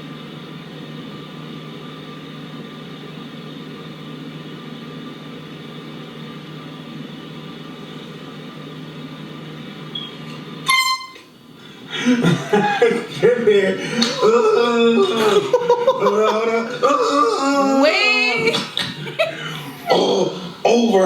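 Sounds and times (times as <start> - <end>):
steady background hum: 0.0 - 21.0
air horn blast: 10.6 - 11.3.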